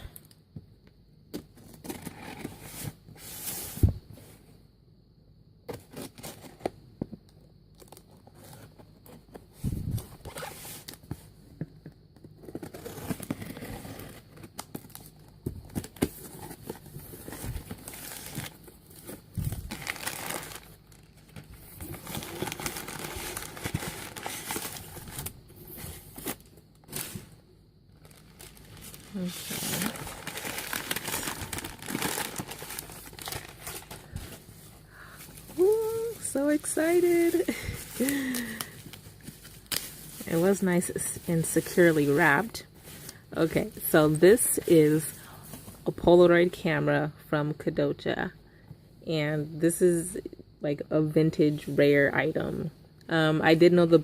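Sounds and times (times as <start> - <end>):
packaging tearing and crinkling: 12.5 - 25.4, 28.0 - 34.2, 37.2 - 40.3.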